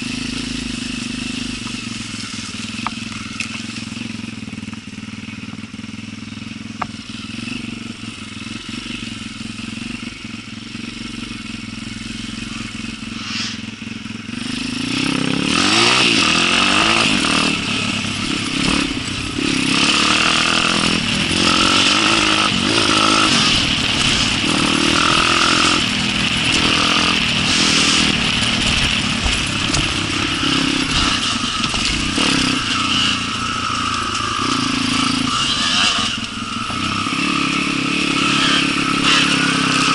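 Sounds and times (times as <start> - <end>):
motorcycle engine revving: 0.0 - 39.9
rattling knocks: 20.1 - 32.7.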